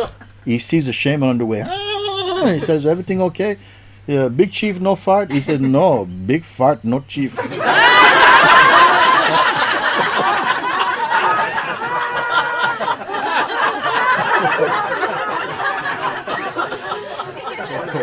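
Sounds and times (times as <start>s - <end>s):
audience laughing: 2.2s - 2.8s, 7.4s - 18.0s.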